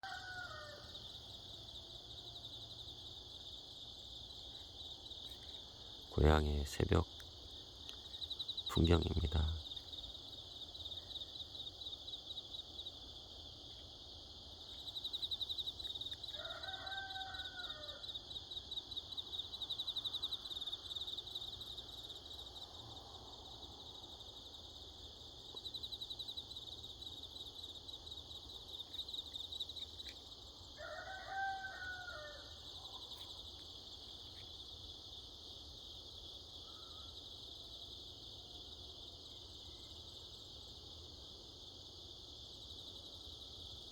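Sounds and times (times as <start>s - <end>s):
rooster crowing: 0.0s - 1.1s, 16.2s - 18.2s, 30.8s - 33.1s
crickets chirring: 0.0s - 43.9s.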